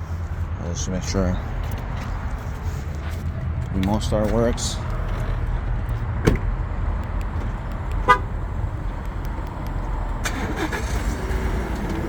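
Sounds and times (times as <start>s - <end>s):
car horn chirp: 8.0s - 8.3s.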